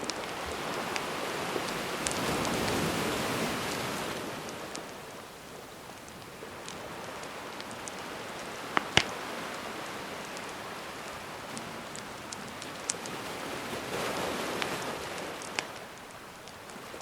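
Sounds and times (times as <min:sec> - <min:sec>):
wood fire crackling: 0:00.0 - 0:17.0
sharp pops from fire: 0:08.7 - 0:09.6.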